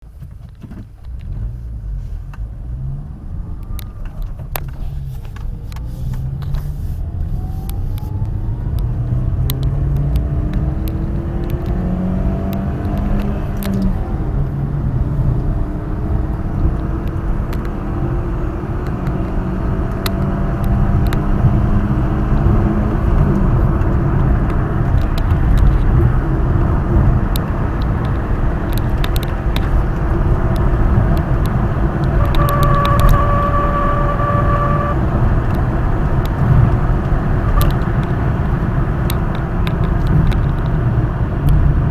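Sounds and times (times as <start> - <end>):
car engine rumble: 0.0 - 41.9
road and wind noise: 0.0 - 41.9
tones climbing in pitch: 32.1 - 35.0.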